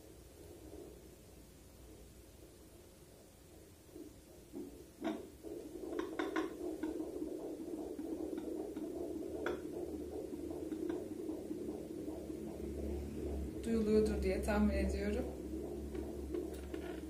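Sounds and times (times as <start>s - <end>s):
fetal heartbeat on doppler speaker: 0.0s - 17.0s
probe knocks and scrapes: 4.0s - 13.6s, 15.2s - 17.0s.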